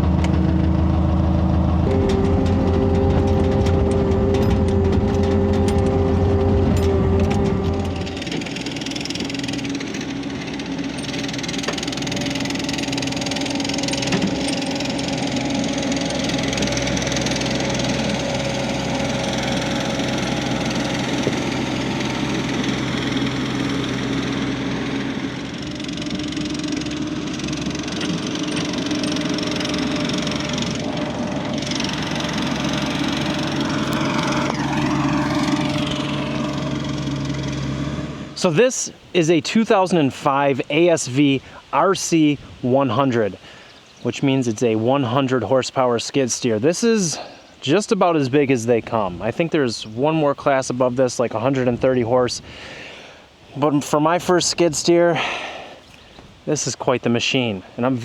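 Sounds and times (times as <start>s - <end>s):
diesel engine running: 0.0s - 41.8s.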